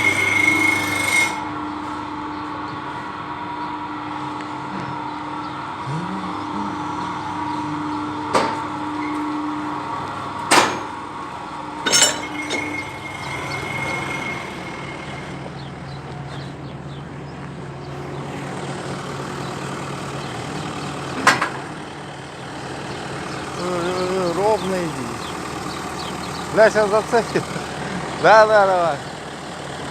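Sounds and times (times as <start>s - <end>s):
tractor engine running: 0.0s - 29.9s
sharp knocks: 10.5s - 11.0s.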